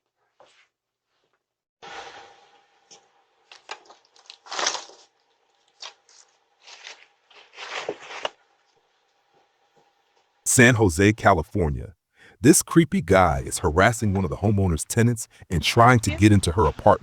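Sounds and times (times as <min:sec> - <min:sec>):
faint steady hum: 0:10.5 - 0:17.0.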